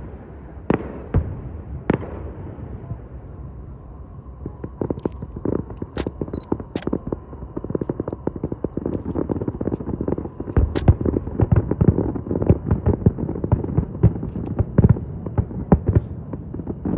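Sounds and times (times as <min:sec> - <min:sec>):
fireworks crackling bangs: 0:00.0 - 0:03.6, 0:04.3 - 0:16.9
heavy firework booms: 0:00.0 - 0:16.9.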